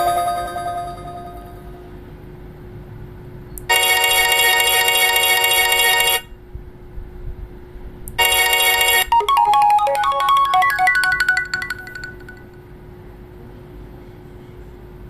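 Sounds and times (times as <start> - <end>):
buzzy electronic beep: 0.0 - 1.8
jingle of chiming notes: 0.0 - 1.8, 9.1 - 12.5.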